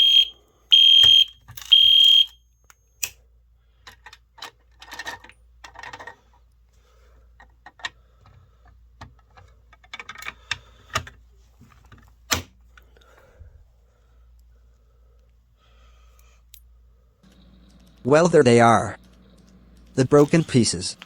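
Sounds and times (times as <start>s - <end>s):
fire alarm pull station clicking: 0.0s - 3.2s, 17.2s - 21.0s.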